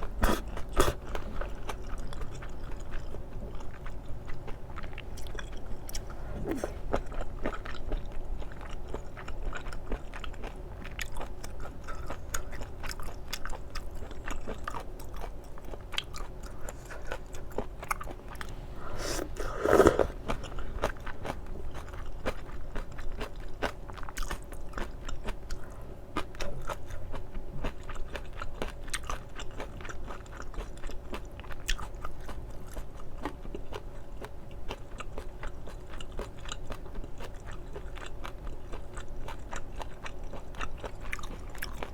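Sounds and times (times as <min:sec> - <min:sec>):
chewing food: 0:00.0 - 0:41.9
wet mouth clicks: 0:19.0 - 0:20.2.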